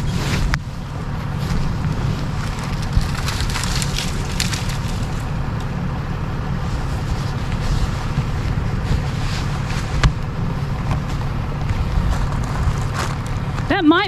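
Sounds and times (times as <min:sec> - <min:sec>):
crackles: 0:00.0 - 0:05.7, 0:06.6 - 0:13.7
truck engine running: 0:00.0 - 0:14.0.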